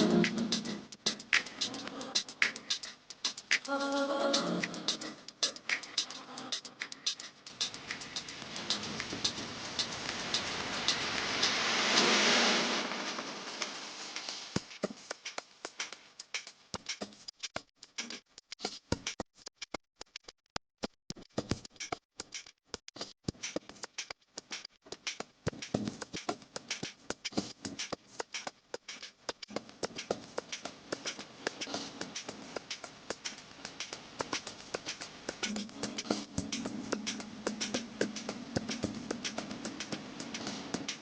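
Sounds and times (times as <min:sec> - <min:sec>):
food frying in hot oil: 0:09.5 - 0:12.6.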